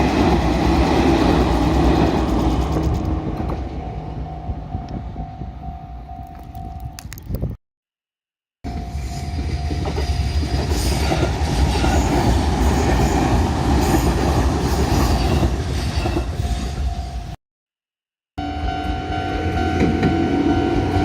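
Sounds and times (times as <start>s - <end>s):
train wheels rumbling on rails: 0.0s - 5.7s, 8.7s - 17.4s.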